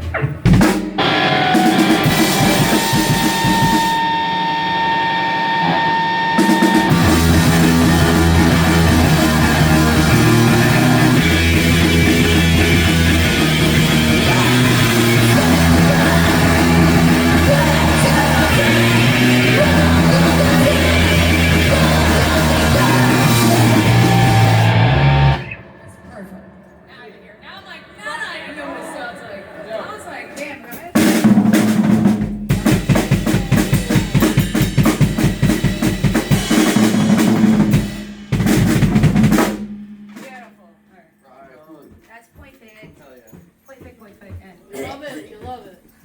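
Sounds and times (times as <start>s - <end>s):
drum kit: 0.0s - 27.6s, 30.7s - 40.9s
live heavy rock band: 0.1s - 26.7s, 31.0s - 40.0s
distorted guitar riff: 1.0s - 28.0s, 32.6s - 39.4s
held high tone: 1.0s - 30.1s.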